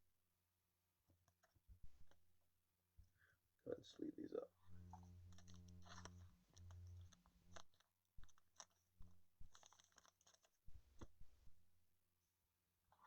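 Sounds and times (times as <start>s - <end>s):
trading cards clicking and crinkling: 4.7s - 11.6s.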